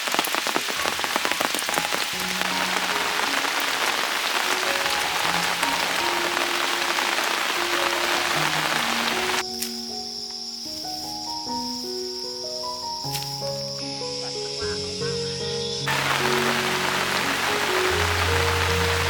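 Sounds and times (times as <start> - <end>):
heavy rain falling: 0.0 - 9.4, 15.9 - 19.0
soft background music: 1.4 - 19.0.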